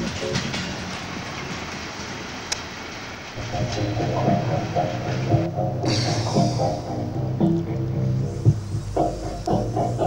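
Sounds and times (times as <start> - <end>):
instrumental music with rhythmic beat: 3.4 - 10.0.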